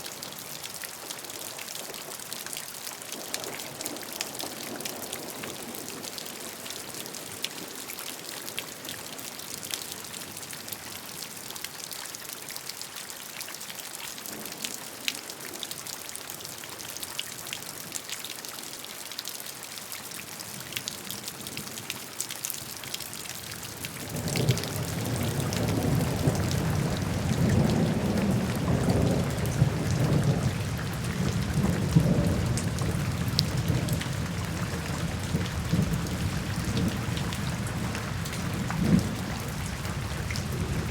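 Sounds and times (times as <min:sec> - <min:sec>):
rain drops ticking: 0:11.4 - 0:40.9
rolling thunder: 0:24.1 - 0:40.9.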